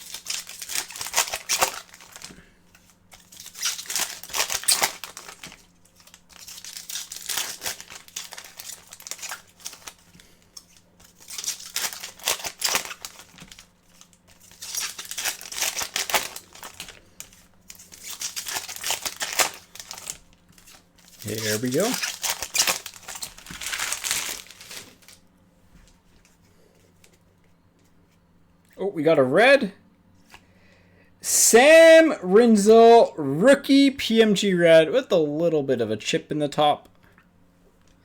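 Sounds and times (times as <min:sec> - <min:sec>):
card pack wrappers tearing: 0:00.0 - 0:25.2.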